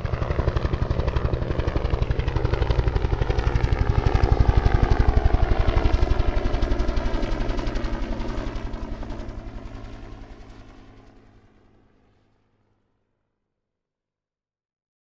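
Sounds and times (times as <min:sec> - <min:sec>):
helicopter rotor beating: 0:00.0 - 0:11.5.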